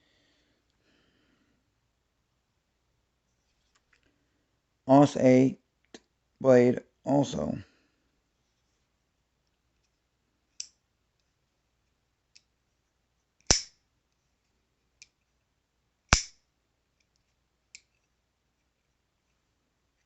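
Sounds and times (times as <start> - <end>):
knife blade snapping open: 13.5 - 13.7, 16.1 - 16.3.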